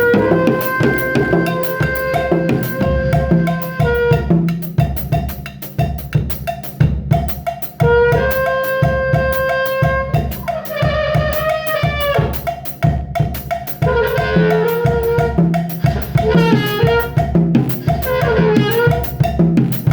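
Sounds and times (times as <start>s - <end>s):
backing track music: 0.0s - 4.4s, 7.8s - 12.6s, 13.8s - 19.9s
drum kit playing a quick beat: 0.0s - 19.9s.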